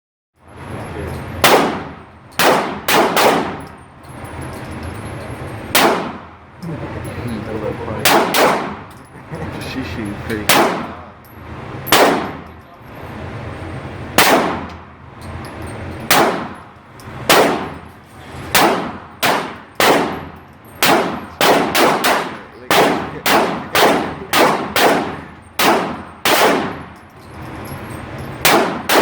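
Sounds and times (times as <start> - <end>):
pistol shots: 1.4 - 3.7, 5.7 - 6.3, 8.0 - 8.9, 10.4 - 11.1, 11.9 - 12.5, 14.1 - 14.8, 16.1 - 16.6, 17.3 - 17.9, 18.5 - 27.0, 28.4 - 29.0.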